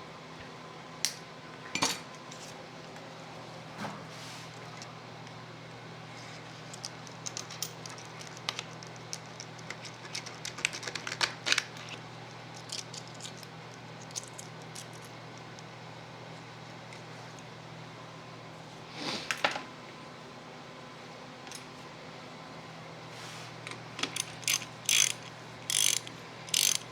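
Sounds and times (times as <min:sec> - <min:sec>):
small metal parts and tools clicking: 0:06.7 - 0:12.0, 0:12.6 - 0:15.1, 0:24.0 - 0:26.9.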